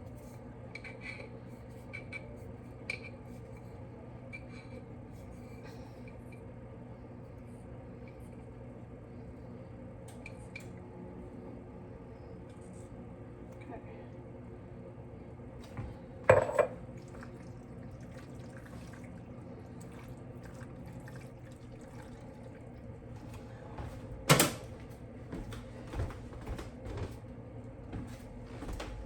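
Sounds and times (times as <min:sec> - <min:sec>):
steady hum: 0:06.8 - 0:29.0
dishes clanking: 0:16.2 - 0:16.8.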